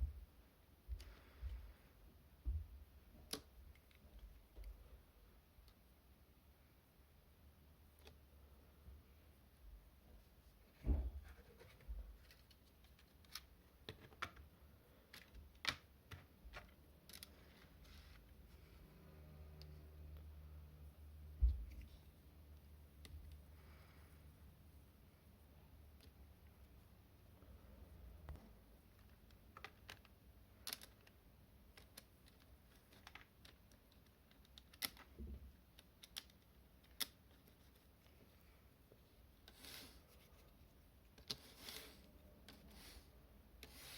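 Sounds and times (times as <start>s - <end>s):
small plastic parts clicking: 12.2s - 17.5s, 28.3s - 38.2s.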